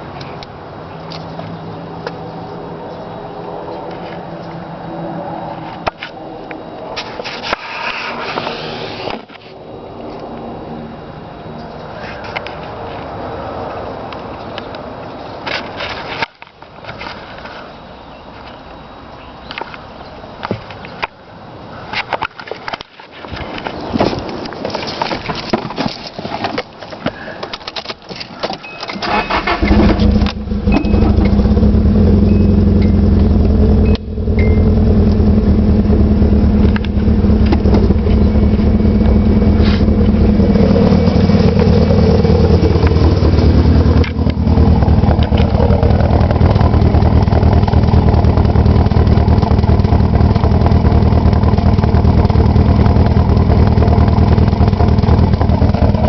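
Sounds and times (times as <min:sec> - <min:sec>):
starter motor clicking: 0:29.0 - 0:31.5
car engine running: 0:29.1 - 0:56.0.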